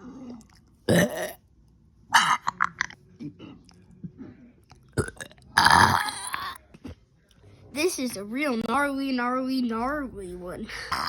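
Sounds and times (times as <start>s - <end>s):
person burping: 0.2s - 1.4s, 2.1s - 3.0s, 5.0s - 6.6s, 10.8s - 11.0s.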